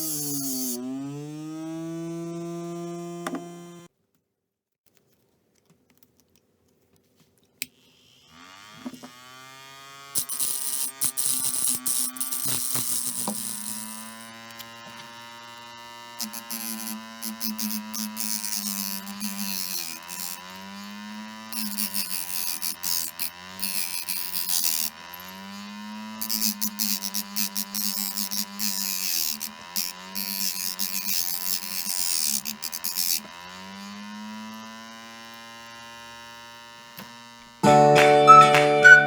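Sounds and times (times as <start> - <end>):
small motor humming: 0.0 - 3.9, 7.7 - 38.0
rasping sanding hiss: 10.2 - 37.6.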